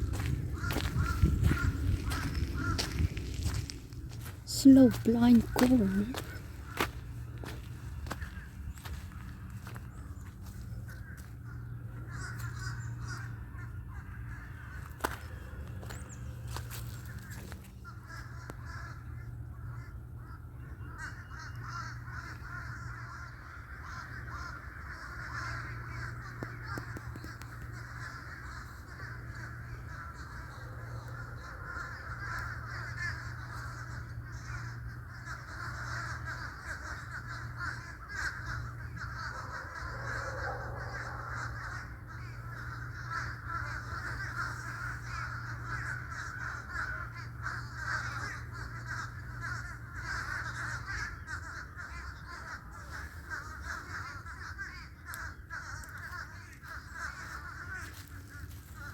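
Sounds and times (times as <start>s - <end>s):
crows cawing: 0.0s - 58.9s.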